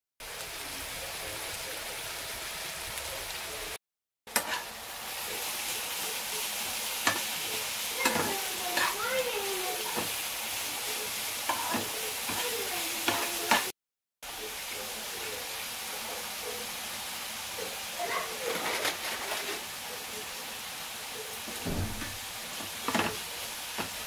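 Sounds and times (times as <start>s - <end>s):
food sizzling in a pan: 0.2s - 24.0s
spoon scraping metal pan: 4.3s - 4.7s, 8.0s - 9.0s, 11.5s - 13.7s.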